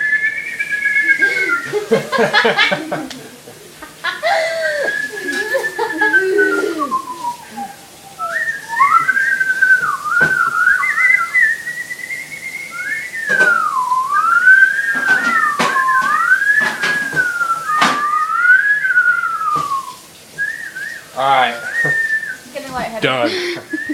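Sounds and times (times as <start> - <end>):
person whistling sliding notes: 0.0 - 1.8, 4.6 - 22.5, 23.6 - 23.9.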